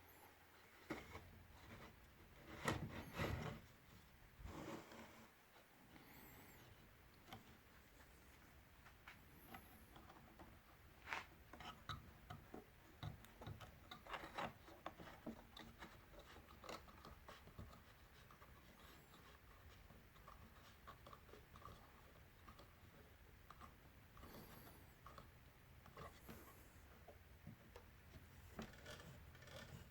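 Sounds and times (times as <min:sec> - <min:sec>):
rubbing sounds: 0:25.8 - 0:29.9.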